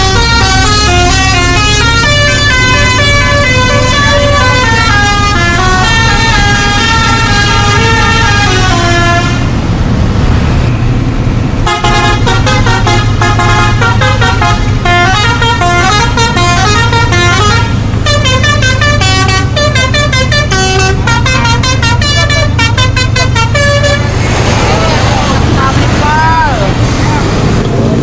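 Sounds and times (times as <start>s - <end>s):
bus musical horn playing a tune: 0.0s - 9.6s, 11.6s - 24.2s
bus engine droning: 0.0s - 28.0s.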